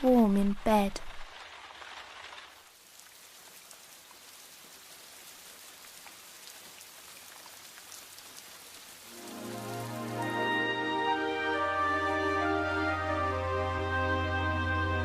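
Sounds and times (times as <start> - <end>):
steady rain falling: 0.0 - 15.0
water drips: 0.4 - 10.6
music: 9.1 - 15.0.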